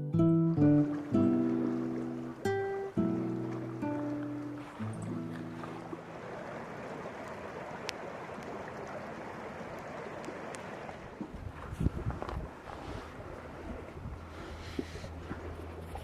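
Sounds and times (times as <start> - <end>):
water rushing: 0.4 - 16.0
wind buffeting microphone: 10.4 - 16.0.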